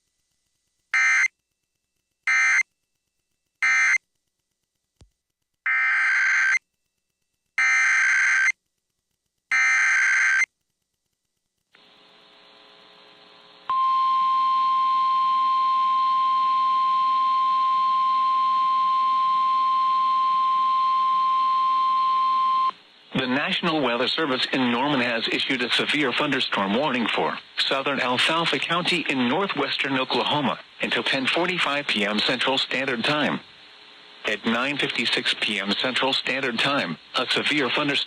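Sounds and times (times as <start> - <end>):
steady single-pitch alarm tone: 13.7 - 22.7.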